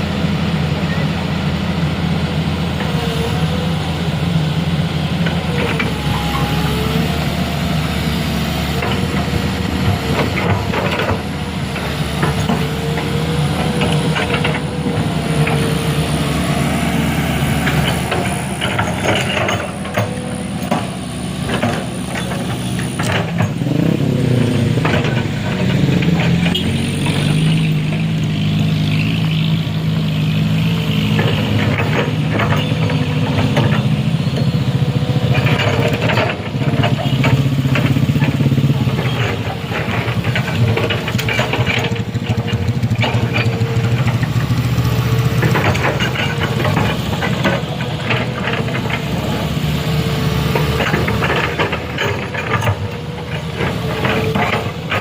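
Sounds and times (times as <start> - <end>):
truck engine running: 0.0 - 55.0
knocks and clatter: 8.7 - 15.7, 17.6 - 28.5, 30.9 - 55.0.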